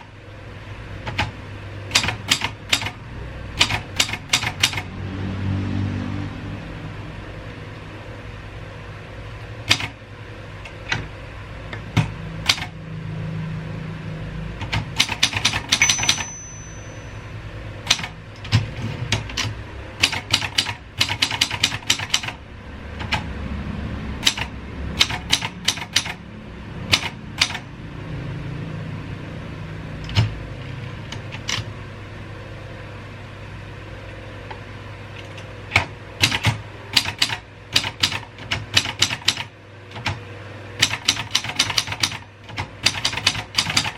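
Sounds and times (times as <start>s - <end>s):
typewriter keys clicking: 1.9s - 3.0s, 3.6s - 4.8s, 9.7s - 10.0s, 14.6s - 16.2s, 17.8s - 22.4s, 24.2s - 26.2s, 35.8s - 40.2s, 40.8s - 43.9s
typewriter bell ring: 15.6s - 17.5s.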